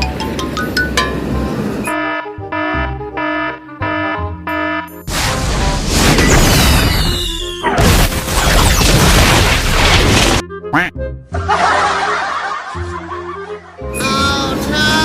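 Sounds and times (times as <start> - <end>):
music: 0.0 - 15.0
falling whistle: 6.6 - 7.8.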